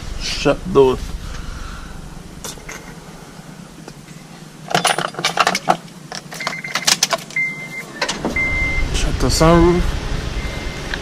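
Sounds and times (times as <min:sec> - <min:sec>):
high electronic beep: 0:06.4 - 0:09.0, 0:10.4 - 0:10.9.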